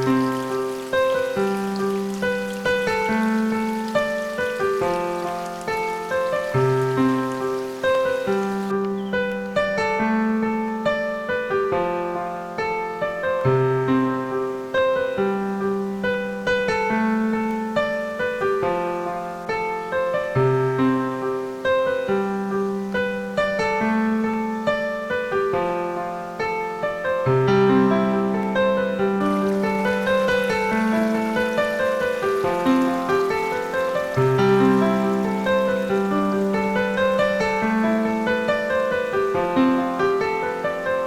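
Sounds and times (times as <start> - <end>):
background piano music: 0.0 - 41.0.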